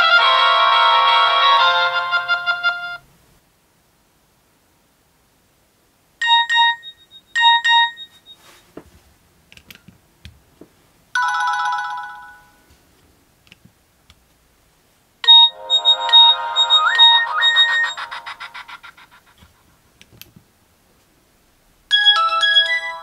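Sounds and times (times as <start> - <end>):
melodic ringtone: 0.0 - 3.0, 6.2 - 8.3, 11.2 - 12.6, 15.2 - 19.2, 21.9 - 23.0
chiming tone: 15.2 - 18.5.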